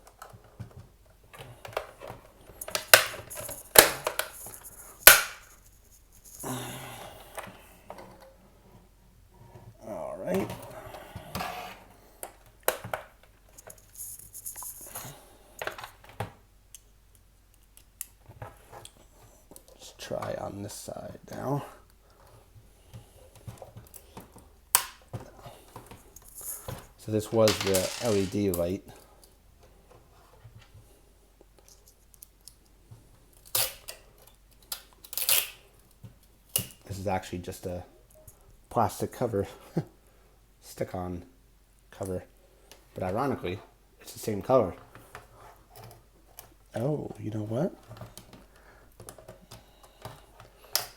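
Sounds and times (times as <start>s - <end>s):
plastic scraping: 26.4s - 28.7s.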